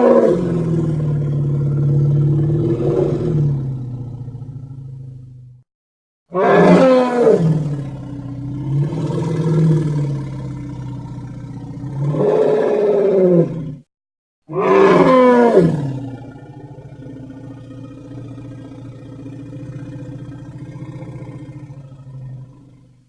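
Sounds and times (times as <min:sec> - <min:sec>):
dinosaur call falling in pitch: 0:14.5 - 0:16.0
low drawn-out call: 0:14.5 - 0:16.1.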